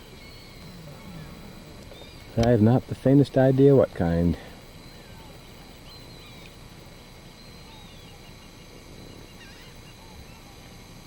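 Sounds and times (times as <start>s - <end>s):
shorebirds whistled calls: 0.0s - 2.5s, 4.8s - 6.6s, 7.3s - 10.6s
low steady background hiss: 0.0s - 11.0s.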